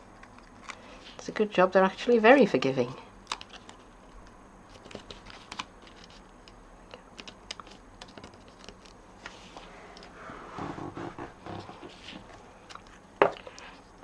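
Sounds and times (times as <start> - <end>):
paper pieces clicking and tapping: 4.7 - 9.0.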